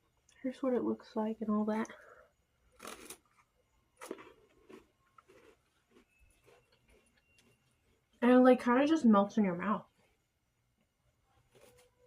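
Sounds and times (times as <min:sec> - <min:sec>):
wafer crunching when bitten: 0:02.7 - 0:07.1.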